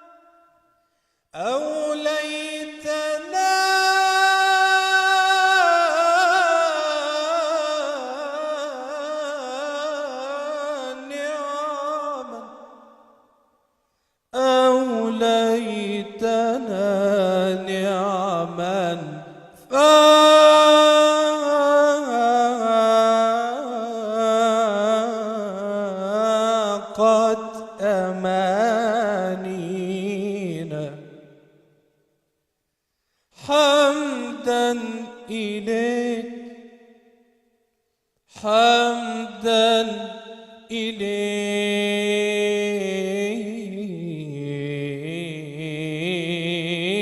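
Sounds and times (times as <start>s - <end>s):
person singing unaccompanied: 0.0s - 0.3s, 33.5s - 36.5s
man singing melismatic religious chant: 0.0s - 0.5s, 1.3s - 13.0s, 14.4s - 31.4s, 33.4s - 37.1s, 38.3s - 47.0s.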